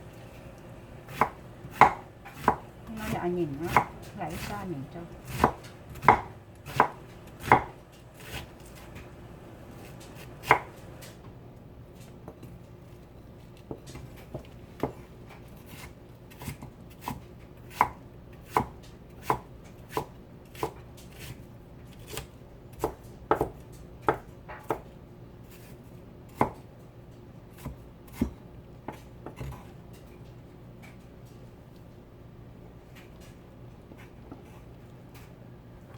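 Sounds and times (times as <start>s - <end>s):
faint steady hum: 0.0s - 16.6s
knife chopping on cutting board: 1.1s - 8.9s, 10.1s - 10.9s, 15.7s - 21.4s, 22.0s - 24.8s, 26.3s - 26.6s, 27.5s - 29.6s.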